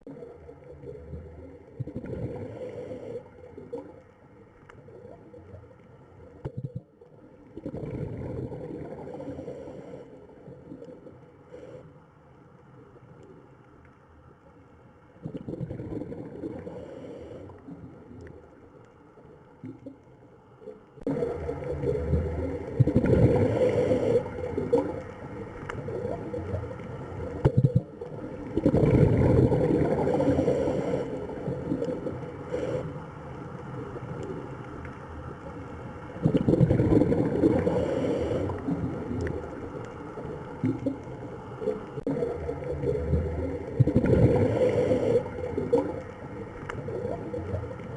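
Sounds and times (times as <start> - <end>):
rushing gurgling water: 21.1 - 32.9, 34.2 - 47.9.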